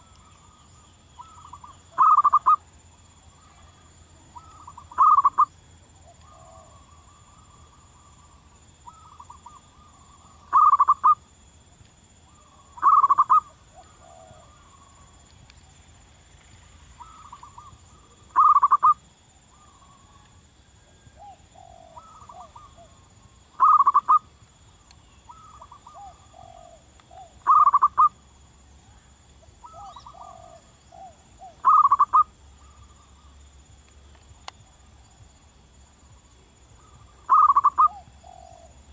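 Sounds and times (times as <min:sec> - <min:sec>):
dove cooing: 0:01.2 - 0:02.6, 0:04.4 - 0:08.1, 0:08.9 - 0:11.2, 0:12.3 - 0:15.0, 0:17.0 - 0:19.0, 0:20.8 - 0:24.3, 0:25.3 - 0:28.1, 0:29.6 - 0:32.8, 0:36.8 - 0:38.9.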